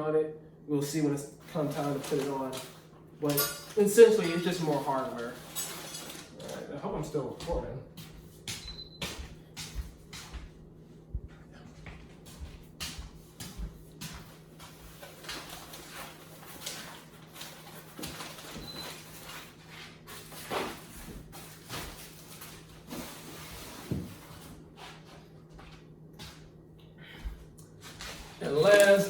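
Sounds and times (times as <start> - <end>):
packaging rustling: 1.4 - 2.9.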